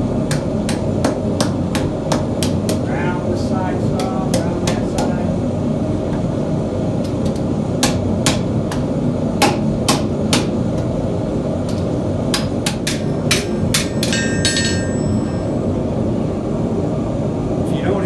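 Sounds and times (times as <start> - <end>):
hammer striking steel plate: 11.7 - 15.6.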